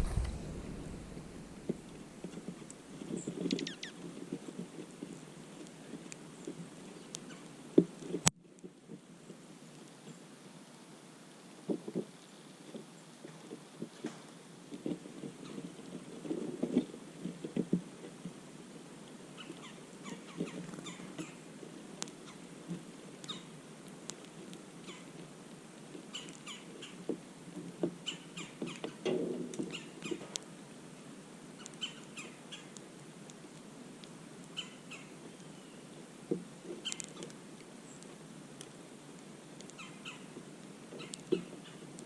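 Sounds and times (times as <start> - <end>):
small birds chirping: 0.0 - 4.1, 5.0 - 7.6, 19.3 - 25.3, 25.9 - 27.1, 28.0 - 29.0, 29.6 - 30.4, 31.6 - 32.9, 34.4 - 36.0, 36.6 - 38.7, 39.6 - 42.0
faint clicks: 36.3 - 38.8, 39.6 - 42.0.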